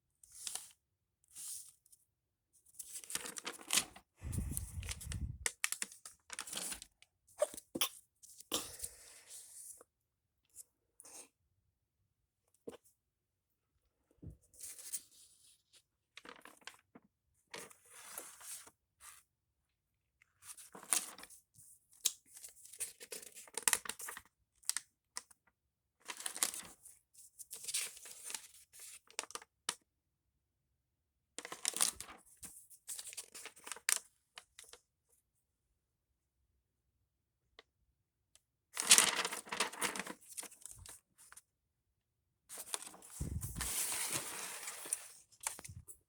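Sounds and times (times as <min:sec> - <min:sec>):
paper rustling and crinkling: 0:02.8 - 0:06.9, 0:16.2 - 0:16.8, 0:26.0 - 0:26.9, 0:31.4 - 0:34.0, 0:38.8 - 0:41.4, 0:42.5 - 0:46.0.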